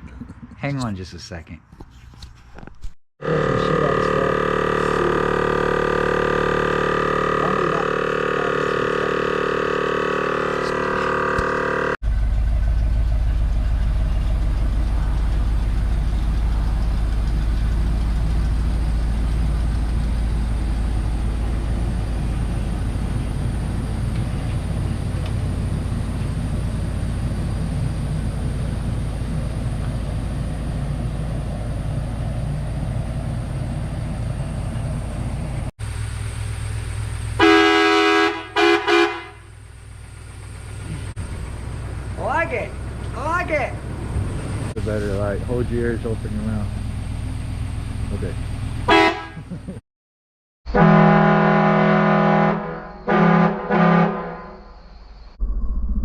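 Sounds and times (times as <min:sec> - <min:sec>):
low vehicle engine rumble: 0:02.1 - 0:49.8
air horns blowing a chord: 0:03.2 - 0:12.0, 0:37.4 - 0:39.5, 0:48.9 - 0:49.5, 0:50.7 - 0:54.6.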